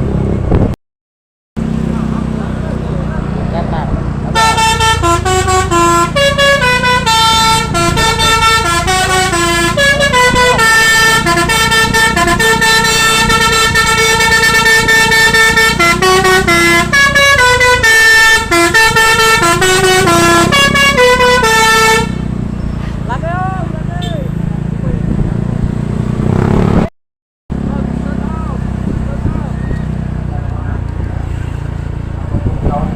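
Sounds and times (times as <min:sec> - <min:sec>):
bus engine rumble: 0:00.0 - 0:00.8, 0:01.6 - 0:26.8, 0:27.5 - 0:32.9
multi-tone bus horn tune: 0:04.3 - 0:22.4.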